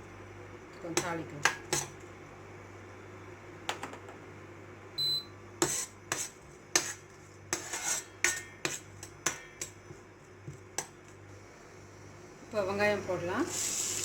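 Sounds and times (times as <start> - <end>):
metal spoon clinking on pan: 8.2 - 9.8
spices sizzling in oil: 13.0 - 14.0.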